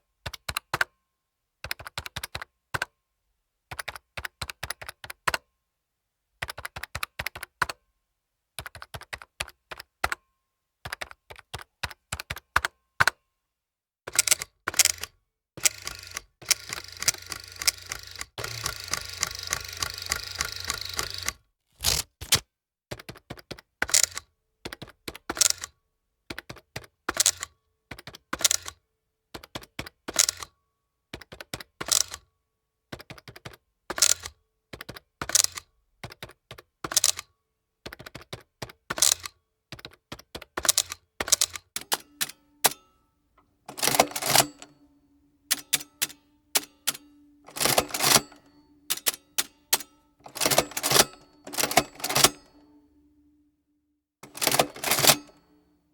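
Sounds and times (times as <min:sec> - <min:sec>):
adding machine clicking: 0:15.6 - 0:22.4, 0:41.8 - 0:42.9, 0:43.7 - 0:44.8, 0:45.5 - 0:52.7, 0:54.2 - 0:55.6.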